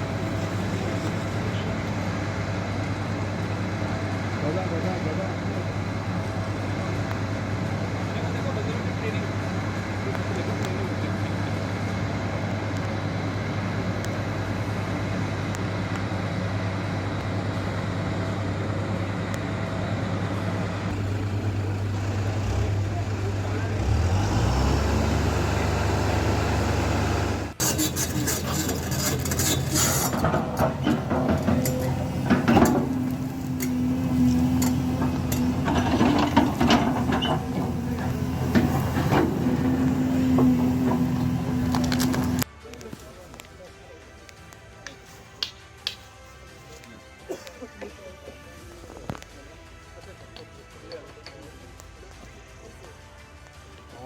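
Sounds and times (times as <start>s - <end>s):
engine humming: 0.0s - 42.6s
metallic clanks and knocks: 27.6s - 42.4s.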